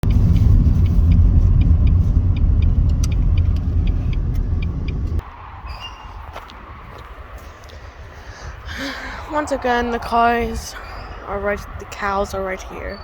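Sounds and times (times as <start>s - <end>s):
low rumble: 0.0s - 13.0s
faint ticking: 0.4s - 5.2s.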